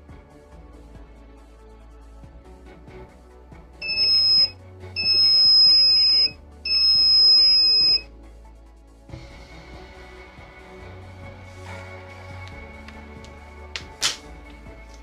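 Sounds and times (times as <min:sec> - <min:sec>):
background music: 0:00.0 - 0:15.0
electronic buzzer beeps: 0:03.8 - 0:08.0.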